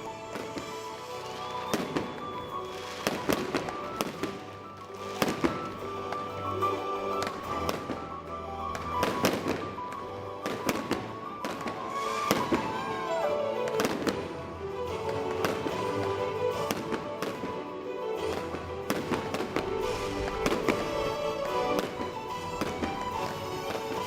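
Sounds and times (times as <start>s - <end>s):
music: 0.0s - 24.0s
fireworks bangs: 0.3s - 8.0s, 8.7s - 13.0s, 13.8s - 14.3s, 18.2s - 24.0s.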